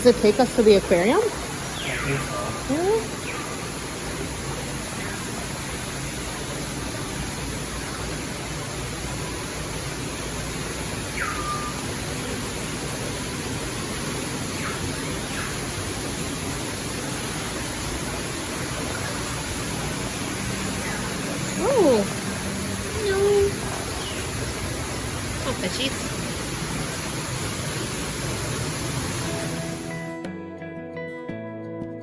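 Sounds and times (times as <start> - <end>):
steady rushing noise: 0.0 - 30.0
faint high chirps: 11.1 - 11.9.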